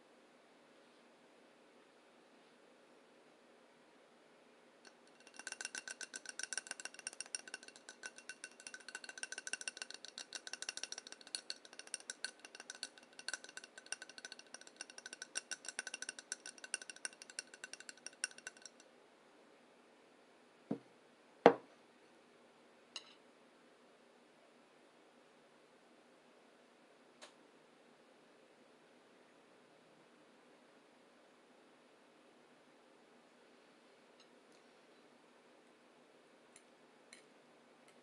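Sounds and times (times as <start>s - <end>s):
utensil clinking against dish: 4.9s - 18.8s.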